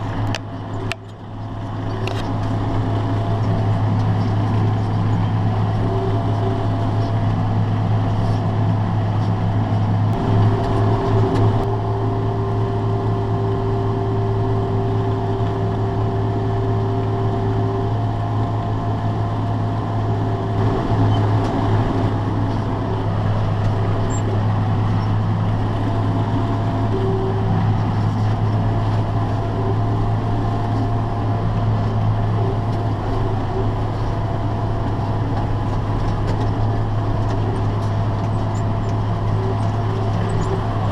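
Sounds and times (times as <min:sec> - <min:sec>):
tractor engine hum: 0:00.0 - 0:40.9
whining machine tone: 0:26.8 - 0:28.2.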